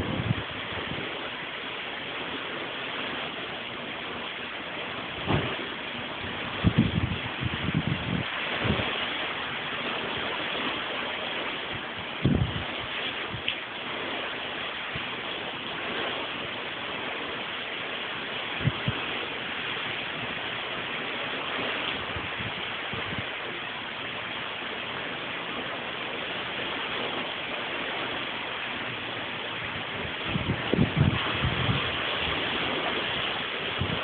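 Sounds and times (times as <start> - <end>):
heavy rain pouring: 0.0 - 34.0
low thumps: 5.1 - 8.9.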